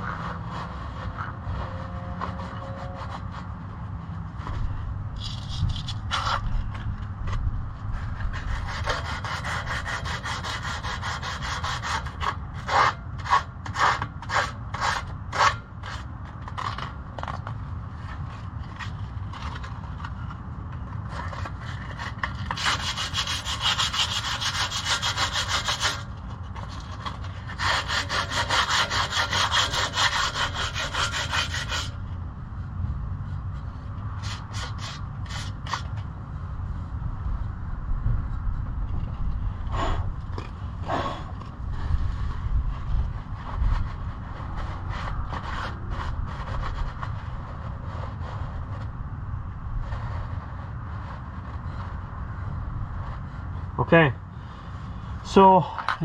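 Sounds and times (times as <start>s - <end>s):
tool scraping steel pipe: 0.0s - 3.6s, 4.4s - 32.1s, 33.6s - 36.1s, 39.9s - 48.9s.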